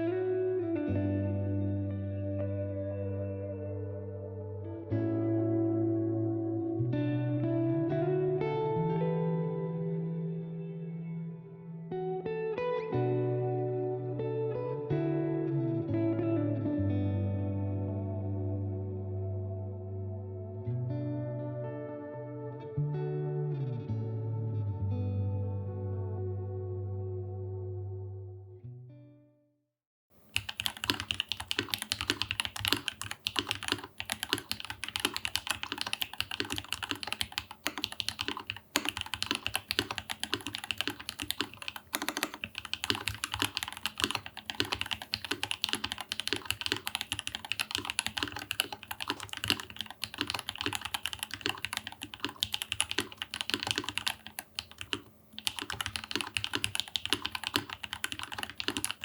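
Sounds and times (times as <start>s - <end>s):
fast typing on mechanical keyboard: 30.2s - 59.0s.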